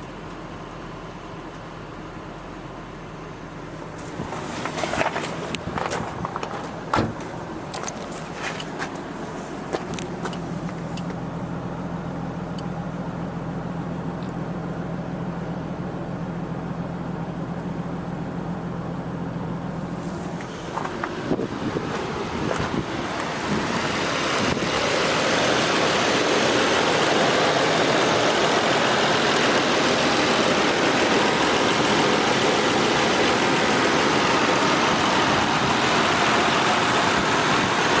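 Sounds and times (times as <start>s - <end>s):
car engine idling: 0.0s - 38.0s
loud steady rushing noise: 20.0s - 38.0s.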